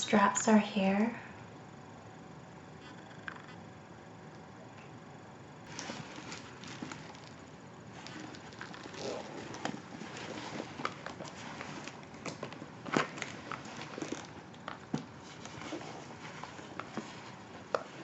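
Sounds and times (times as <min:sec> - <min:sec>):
leather rustling: 0:05.7 - 0:18.0.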